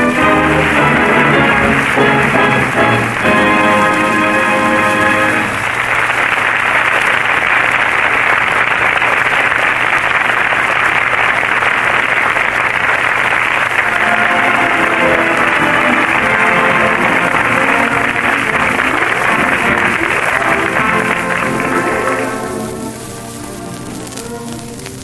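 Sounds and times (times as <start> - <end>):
orchestra playing: 0.0 - 5.8, 13.8 - 25.0
studio audience applauding: 0.0 - 24.0.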